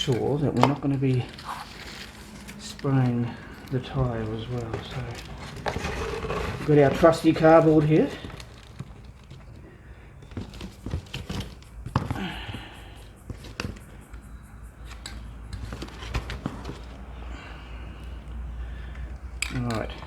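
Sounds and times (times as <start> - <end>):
cardboard handling knocks and scrapes: 3.9 - 9.6, 10.2 - 14.0, 15.6 - 17.1.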